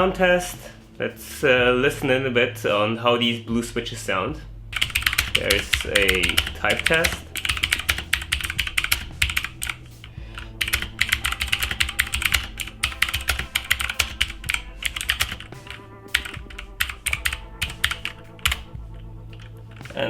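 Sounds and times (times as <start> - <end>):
mechanical keyboard typing: 4.8 - 9.8, 10.4 - 18.7.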